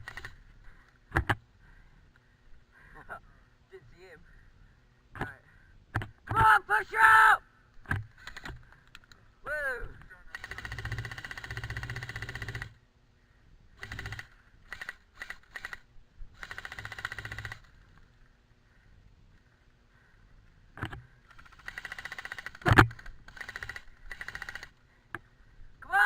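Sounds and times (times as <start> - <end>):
airsoft guns firing bursts: 0.0 - 0.4, 8.2 - 8.6, 10.2 - 12.8, 13.8 - 17.8, 21.3 - 24.8.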